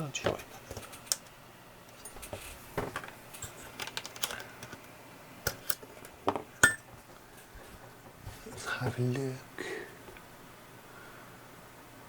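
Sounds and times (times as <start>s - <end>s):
small hard parts clicking: 3.0s - 4.8s.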